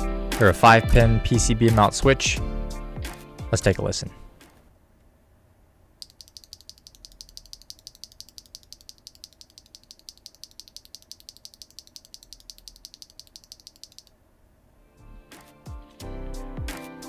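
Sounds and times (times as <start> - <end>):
keyboard switch clacking: 6.0 - 14.1.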